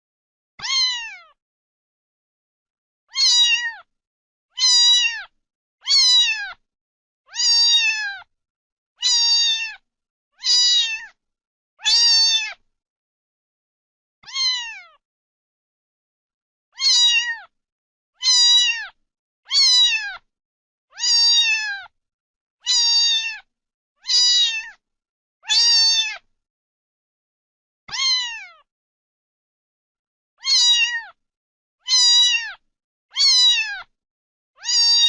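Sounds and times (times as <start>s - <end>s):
kitten meowing loudly: 0.6s - 1.4s, 3.1s - 3.9s, 4.5s - 6.6s, 7.3s - 8.3s, 9.0s - 9.8s, 10.4s - 11.2s, 11.8s - 12.6s, 14.2s - 15.0s, 16.7s - 17.5s, 18.2s - 20.2s, 20.9s - 21.9s, 22.6s - 24.8s, 25.4s - 26.3s, 27.9s - 28.7s, 30.4s - 31.2s, 31.8s - 32.6s, 33.2s - 33.9s, 34.6s - 35.0s.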